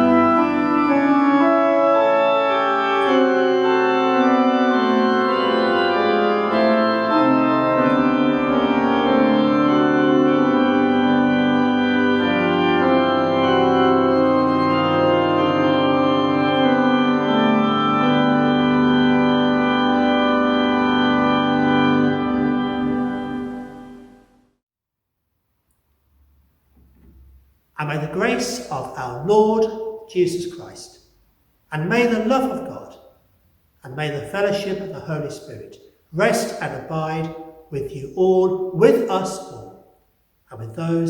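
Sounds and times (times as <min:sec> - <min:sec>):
organ playing sustained chords: 0:00.0 - 0:24.5, 0:27.8 - 0:33.2, 0:33.8 - 0:41.0.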